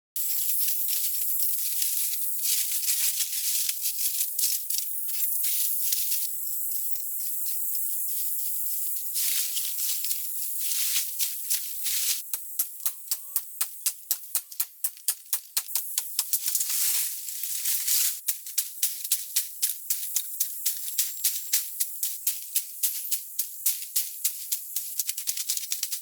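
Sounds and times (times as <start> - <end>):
dry rustling and crackling: 0.2 - 26.0
sharp ticks: 12.2 - 16.7, 18.2 - 26.0.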